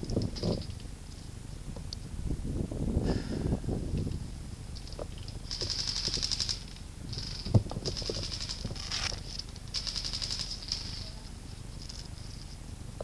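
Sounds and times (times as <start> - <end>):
airsoft rifle automatic fire: 5.5 - 9.1, 9.7 - 11.0.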